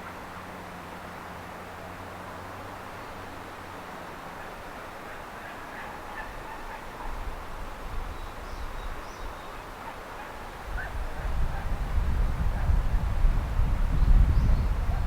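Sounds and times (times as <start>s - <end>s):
wind rumble on microphone: 10.6s - 15.0s.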